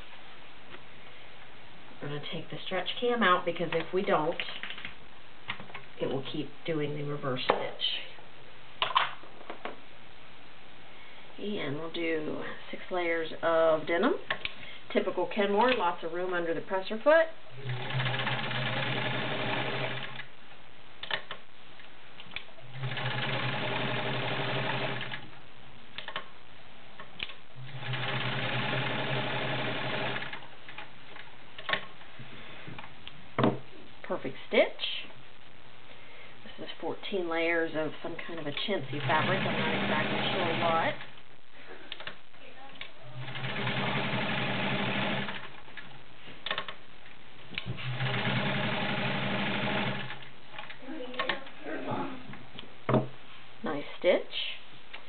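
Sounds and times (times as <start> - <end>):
sewing machine stitching: 17.6 - 20.2, 22.7 - 25.2, 27.6 - 30.4, 38.8 - 41.0, 43.2 - 45.5, 47.6 - 50.2.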